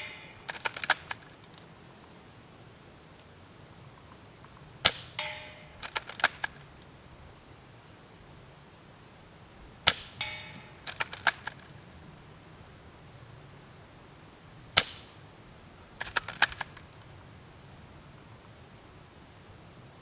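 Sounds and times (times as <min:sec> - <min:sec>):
ringing rattle: 0:00.0 - 0:01.2, 0:04.9 - 0:06.6, 0:10.1 - 0:11.6.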